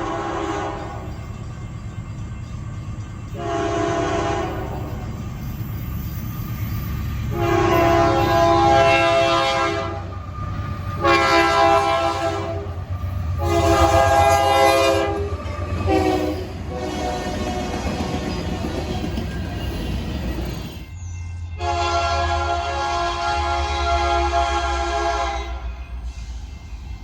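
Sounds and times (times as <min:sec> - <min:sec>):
locomotive air horn blasts: 0:00.0 - 0:01.0, 0:03.4 - 0:04.7, 0:07.3 - 0:10.1, 0:10.9 - 0:17.9, 0:21.6 - 0:25.7
passing train rumble: 0:00.0 - 0:27.0.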